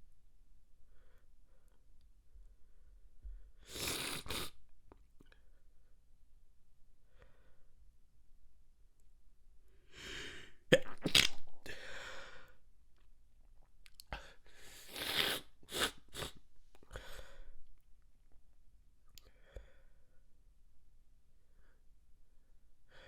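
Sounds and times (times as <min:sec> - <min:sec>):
breathing in and out: 0:07.0 - 0:07.7, 0:09.9 - 0:10.7, 0:11.6 - 0:12.6, 0:14.1 - 0:17.6.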